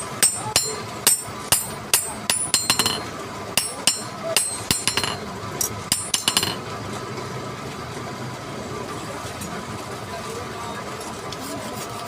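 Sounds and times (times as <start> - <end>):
hammer tapping on metal: 0.0 - 6.7
steady background noise: 0.0 - 12.0.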